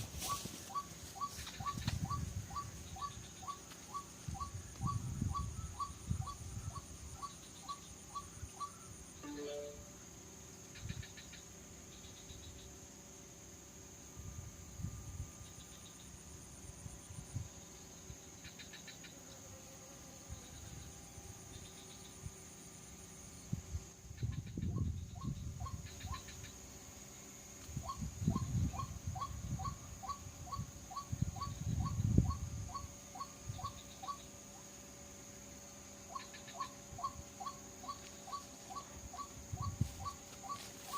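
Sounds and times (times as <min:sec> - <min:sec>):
steady high hiss: 0:00.0 - 0:24.3
insects chirring: 0:00.0 - 0:40.9
falling notes: 0:09.2 - 0:09.9.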